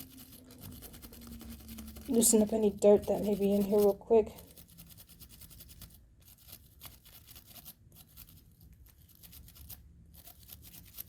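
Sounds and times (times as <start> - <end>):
wire brush scrubbing metal: 0.0 - 8.2.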